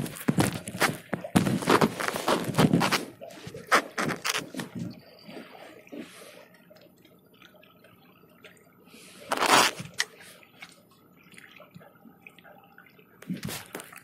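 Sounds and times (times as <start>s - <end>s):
faint water drips: 4.4s - 14.0s
water splash: 9.0s - 10.7s.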